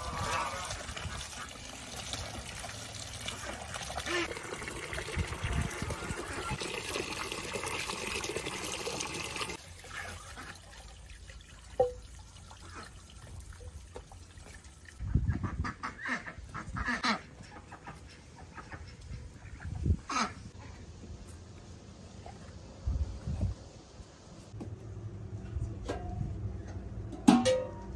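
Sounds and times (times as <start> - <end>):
water running: 0.0 - 15.0.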